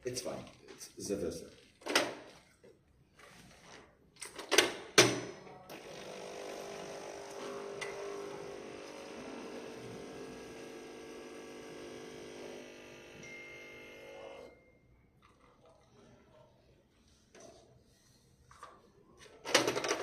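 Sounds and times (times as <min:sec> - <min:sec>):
coffee machine pump humming: 0:05.7 - 0:14.5.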